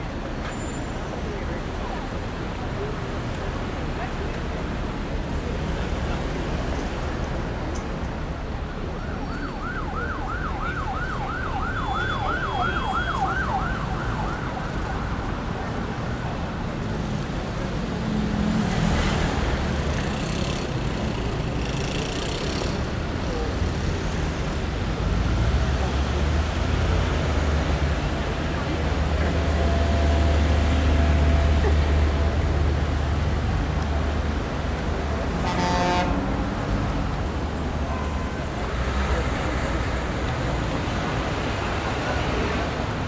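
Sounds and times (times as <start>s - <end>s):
city traffic rumbling: 0.0s - 43.0s
emergency vehicle siren yelping: 8.9s - 15.8s.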